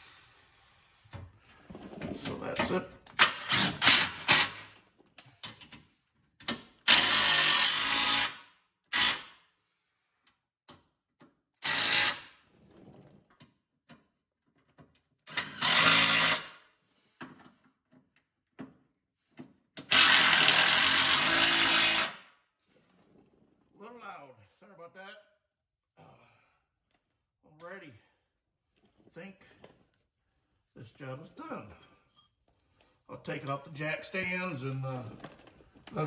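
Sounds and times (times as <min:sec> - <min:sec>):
power tool driving bolts: 0:03.1 - 0:04.8, 0:06.4 - 0:09.4, 0:11.6 - 0:12.4, 0:15.3 - 0:16.6, 0:19.8 - 0:22.3.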